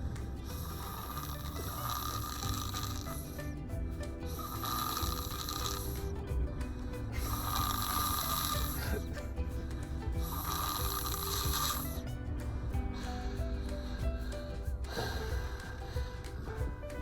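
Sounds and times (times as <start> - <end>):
child snoring: 0.6 - 3.2, 7.2 - 9.0, 10.2 - 11.9.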